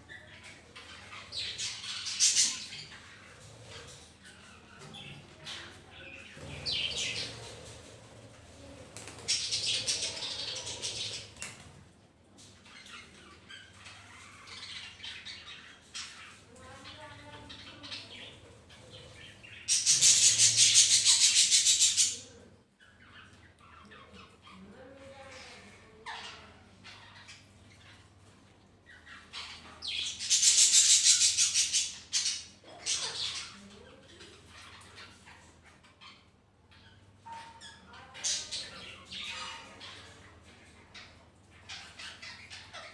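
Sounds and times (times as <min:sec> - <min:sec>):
budgerigars chirping and chattering: 0:00.1 - 0:07.9, 0:09.2 - 0:11.6, 0:12.6 - 0:28.3, 0:28.9 - 0:42.9
parakeets giving raspy calls: 0:12.6 - 0:28.1, 0:28.9 - 0:42.9.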